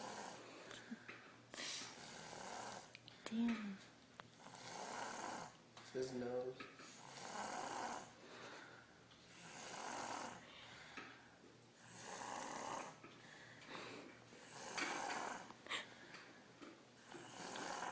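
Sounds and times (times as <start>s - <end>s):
child snoring: 0.0s - 0.4s, 1.6s - 3.5s, 4.4s - 5.6s, 6.9s - 8.2s, 9.3s - 10.5s, 11.8s - 13.0s, 14.4s - 15.9s, 17.0s - 17.9s.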